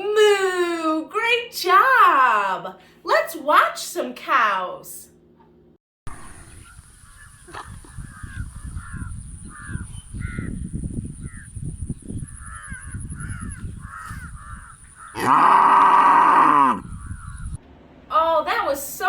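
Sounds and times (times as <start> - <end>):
small birds chirping: 6.1 - 15.3, 16.8 - 17.6
low outdoor rumble: 14.6 - 19.0
cow mooing: 15.2 - 16.8.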